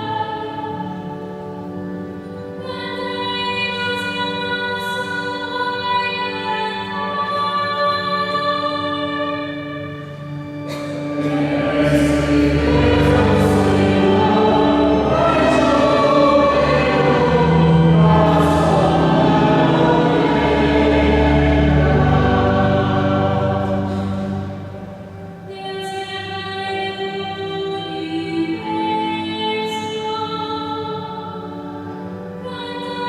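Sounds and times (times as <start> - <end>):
organ: 9.4 - 25.5
youth choir singing: 11.1 - 25.0.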